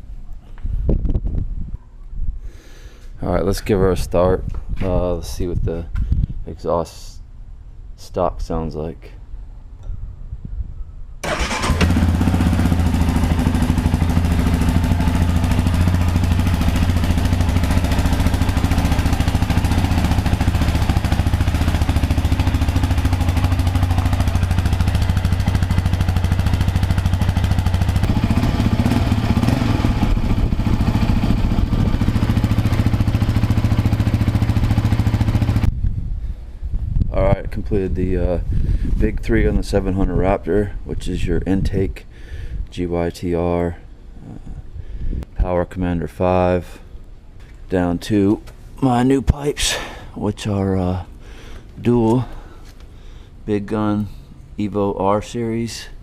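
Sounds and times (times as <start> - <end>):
quad bike engine idling: 11.2 - 35.7.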